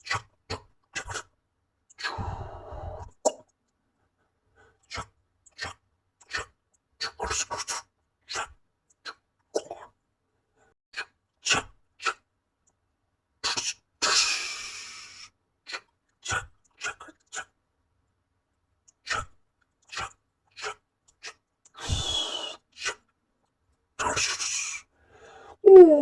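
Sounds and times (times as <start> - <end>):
short cartoon sound effects: 25.6 - 26.0.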